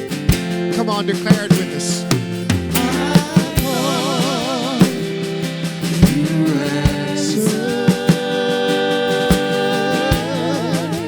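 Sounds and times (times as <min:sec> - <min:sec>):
drum kit beats: 0:00.0 - 0:11.0
sustained instrumental chords: 0:01.4 - 0:07.5.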